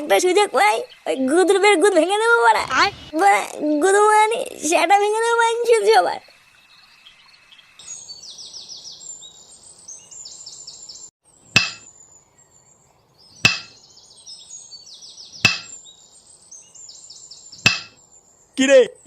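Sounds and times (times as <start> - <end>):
birds chirping: 5.2 - 19.0
hammer blows on metal: 11.6 - 11.9, 13.4 - 13.8, 15.4 - 15.8, 17.6 - 18.0.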